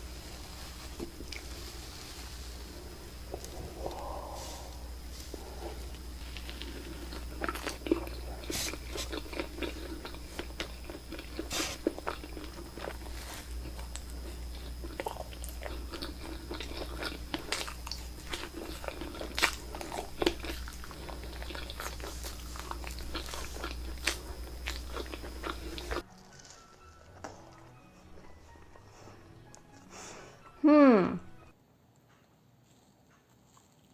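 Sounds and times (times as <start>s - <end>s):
steady low hum: 0.0s - 26.1s
chewing with wet mouth clicks: 5.8s - 26.0s.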